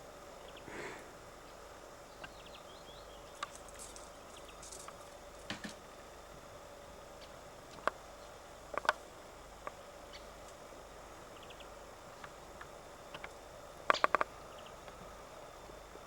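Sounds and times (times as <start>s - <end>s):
squirrel hiccup-like clicks: 13.9s - 14.3s.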